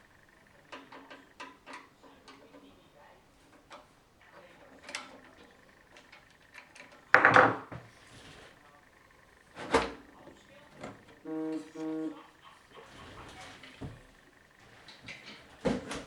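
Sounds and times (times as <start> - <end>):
computer case knocks and clatter: 15.1 - 16.0.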